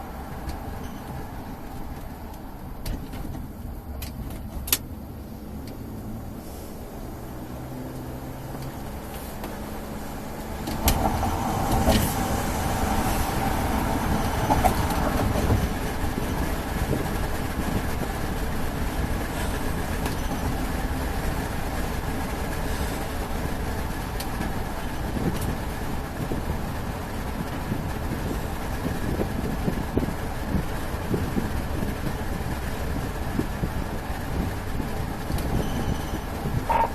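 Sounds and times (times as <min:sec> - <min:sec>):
road noise: 0:00.0 - 0:36.9
vehicle engine rumble: 0:00.0 - 0:36.9.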